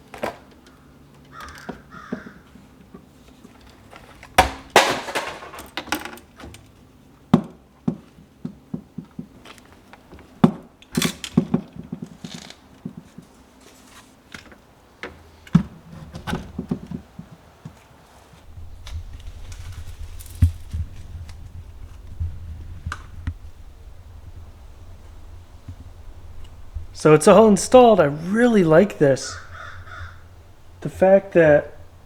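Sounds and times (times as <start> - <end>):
fishing gear knocking and rattling: 3.5 - 6.3, 26.4 - 32.0.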